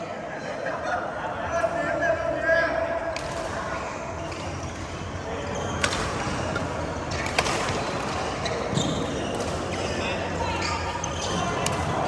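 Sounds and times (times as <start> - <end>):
badminton racket hitting shuttlecock: 7.1 - 8.4.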